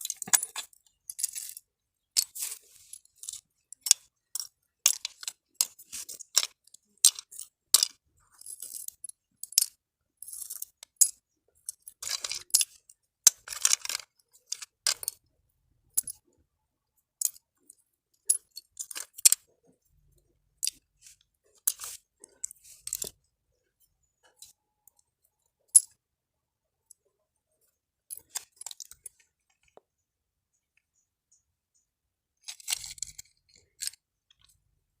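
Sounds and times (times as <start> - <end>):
parts scraping: 0.0 - 9.0, 20.6 - 23.2
small parts clicking and clinking: 0.0 - 26.1, 26.7 - 34.8.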